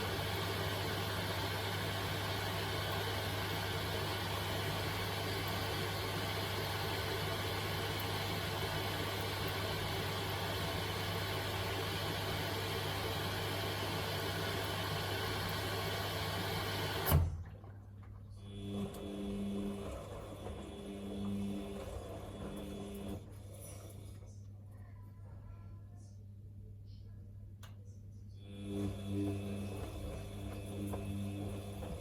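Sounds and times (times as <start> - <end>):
washing machine humming: 0.0 - 24.7, 28.4 - 32.0
quiet pitched hum: 23.2 - 29.8.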